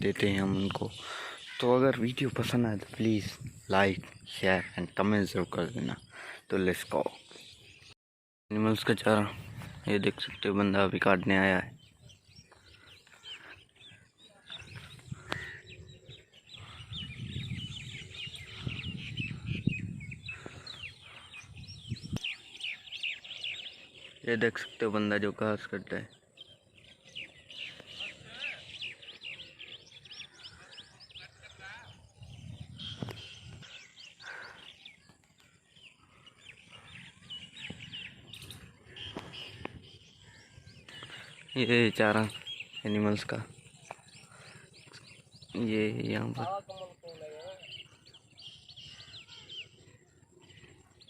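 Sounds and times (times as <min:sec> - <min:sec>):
small birds chirping: 0:00.0 - 0:51.0.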